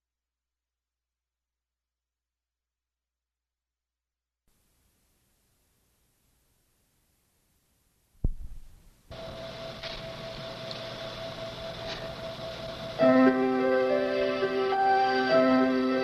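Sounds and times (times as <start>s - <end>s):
steady hiss: 4.5s - 16.0s
brief thump: 8.2s - 8.9s
keyboard chords: 9.1s - 16.0s.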